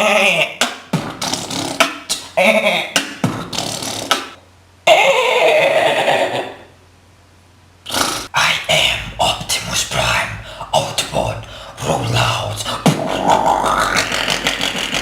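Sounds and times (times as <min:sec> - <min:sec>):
beatboxer mouth clicks: 0:00.6 - 0:04.4, 0:07.9 - 0:08.3, 0:12.7 - 0:15.0
long hissing mouth sound: 0:07.9 - 0:08.4, 0:13.0 - 0:15.0.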